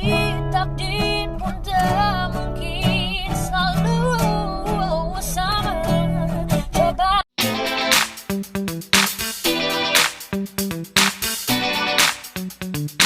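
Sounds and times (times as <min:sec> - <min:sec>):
woman singing pop ballad: 0:00.0 - 0:07.2
acoustic guitar: 0:00.0 - 0:08.0.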